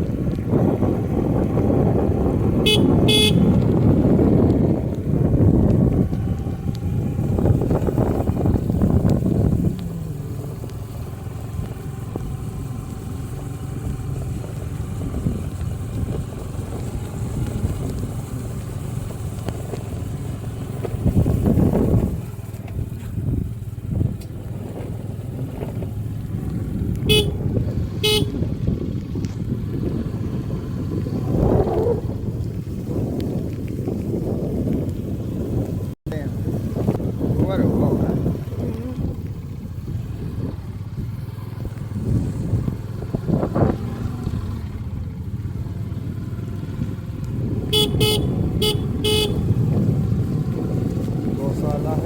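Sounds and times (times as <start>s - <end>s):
wind on microphone: 0.0s - 20.1s, 20.8s - 52.0s
moving vehicle rumble: 0.0s - 52.0s
short horn beeps: 2.6s - 3.7s, 27.0s - 28.4s, 47.7s - 49.5s.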